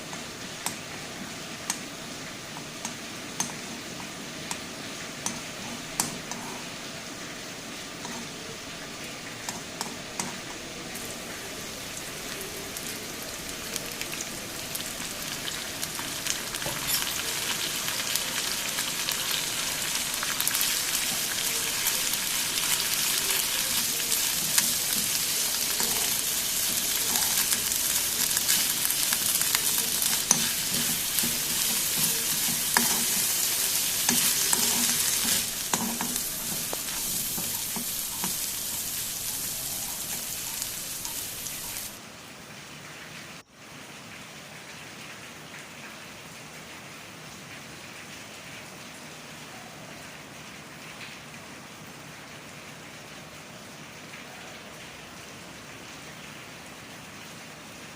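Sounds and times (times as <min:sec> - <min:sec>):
food sizzling in a pan: 0:00.0 - 0:42.0
spoon stirring: 0:20.6 - 0:42.0.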